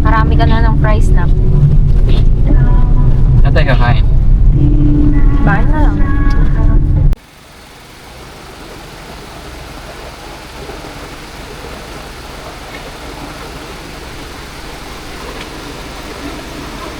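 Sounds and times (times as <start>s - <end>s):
road and tyre noise in car cabin: 0.0s - 16.9s.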